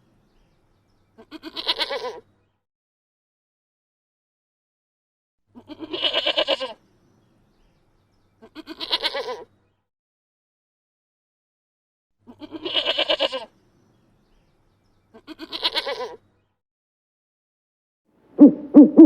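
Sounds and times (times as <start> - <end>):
goat bleating: 1.2 - 2.2, 5.6 - 6.8, 8.5 - 9.4, 12.3 - 13.5, 15.2 - 16.2
loud low animal call: 18.4 - 19.0.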